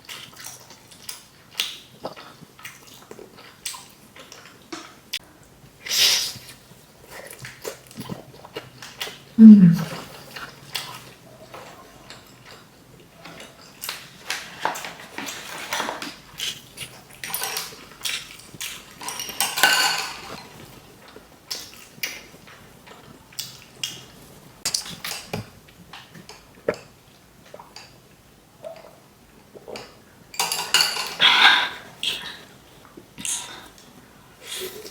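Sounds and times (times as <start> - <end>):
chewing food: 0.0 - 5.0, 7.0 - 19.3
utensils clinking on a dish: 17.1 - 20.6, 29.8 - 31.9.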